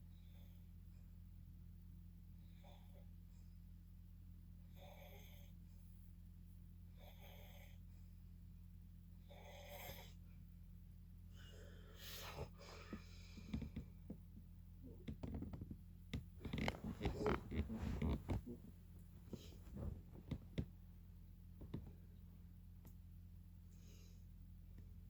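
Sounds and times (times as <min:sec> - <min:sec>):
rustling and knocks of movement: 0:12.8 - 0:22.2.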